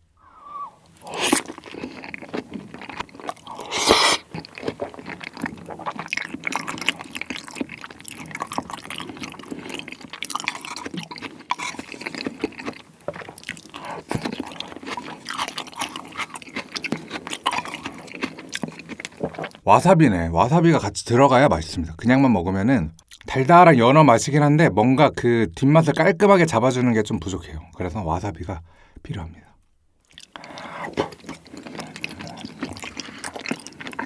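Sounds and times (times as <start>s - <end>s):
wet chewing mouth sounds: 0.4s - 19.6s, 30.1s - 34.0s.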